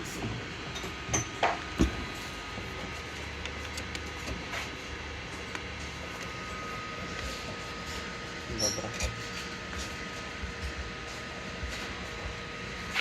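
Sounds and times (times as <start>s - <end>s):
steady background hum: 0.0s - 13.0s
small clicks and handling noise: 2.8s - 4.5s.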